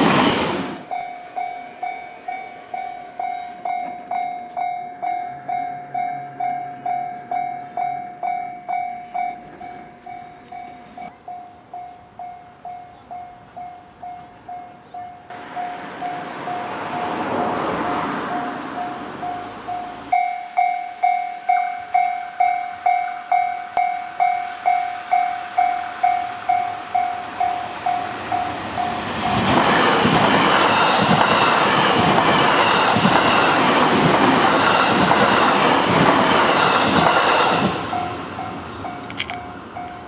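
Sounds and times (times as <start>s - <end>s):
level crossing warning bell: 0.8s - 40.0s
train wheels clattering over rail joints: 29.3s - 40.0s.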